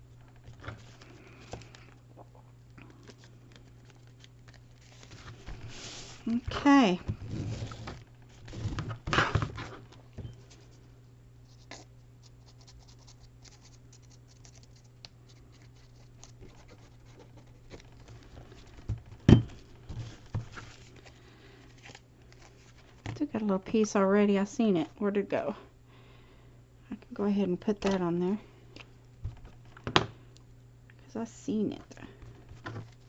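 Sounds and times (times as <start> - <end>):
paper rustling and scratching: 3.0 - 9.8, 11.5 - 23.1.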